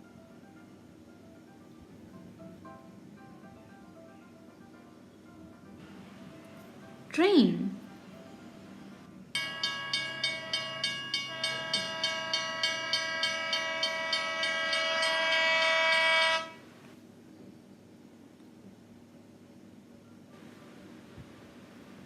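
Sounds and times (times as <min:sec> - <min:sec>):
train wheels clacking on rails: 0:09.4 - 0:16.6
train horn: 0:10.1 - 0:16.6.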